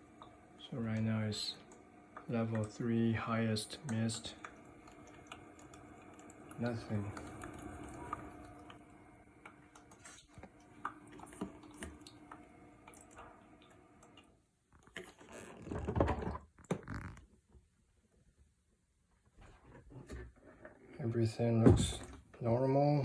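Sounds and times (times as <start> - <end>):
humidifier humming: 0.0 - 14.5, 21.0 - 23.0
plastic rubbing and knocks: 15.1 - 17.3.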